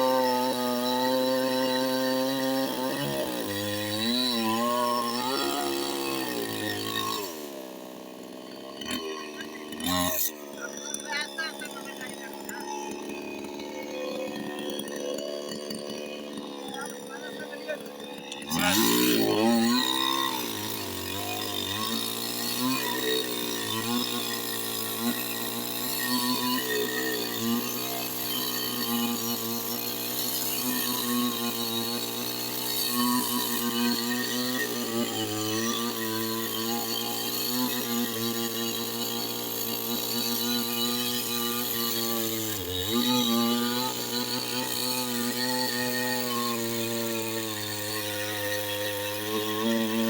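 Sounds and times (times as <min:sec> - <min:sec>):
chainsaw cutting wood: 0:00.0 - 0:50.0.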